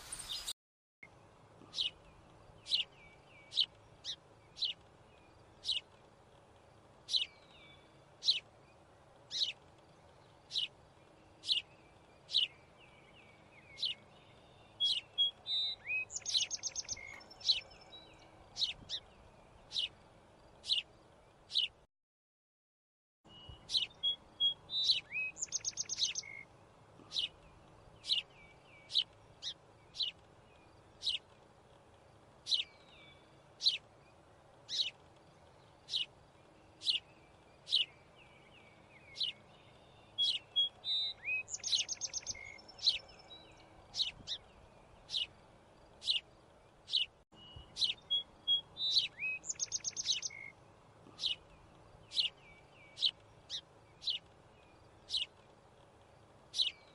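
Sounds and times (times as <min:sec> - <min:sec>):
bird trill: 0:00.0 - 0:00.5, 0:01.7 - 0:05.9, 0:07.1 - 0:08.5, 0:09.3 - 0:09.6, 0:10.4 - 0:20.0, 0:23.3 - 0:26.5, 0:27.1 - 0:31.3, 0:32.4 - 0:34.0, 0:34.7 - 0:45.4, 0:46.0 - 0:55.4, 0:56.5 - 0:56.9
bird chirping: 0:00.0 - 0:06.1, 0:07.0 - 0:21.8, 0:23.3 - 0:31.6, 0:32.4 - 0:56.9.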